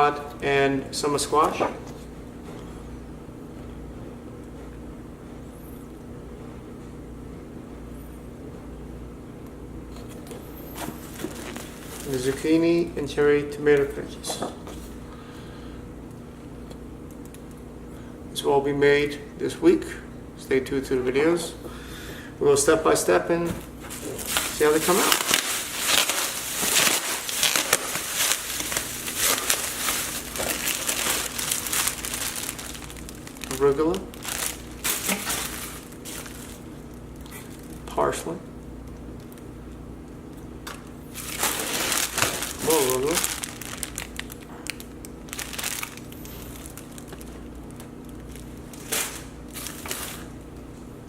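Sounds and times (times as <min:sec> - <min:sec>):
packaging crinkling and rustling: 0:10.0 - 0:12.6, 0:23.5 - 0:38.2, 0:38.8 - 0:39.5, 0:40.6 - 0:50.7.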